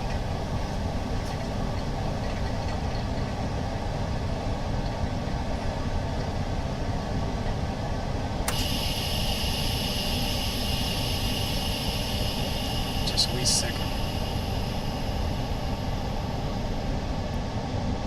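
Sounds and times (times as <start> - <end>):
high whistling hiss: 8.5 - 17.2
machine humming: 8.5 - 17.4.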